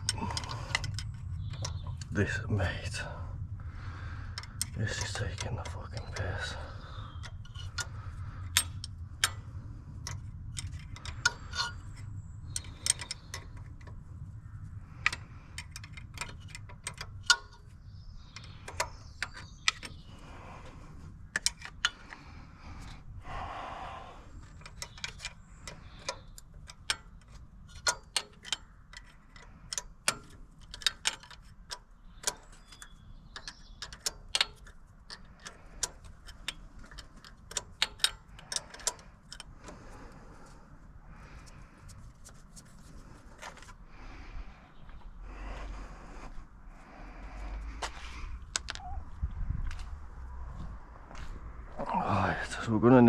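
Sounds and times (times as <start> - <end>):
steady low hum: 0.0 - 53.0
metal tools clinking: 10.0 - 14.0, 24.4 - 39.9.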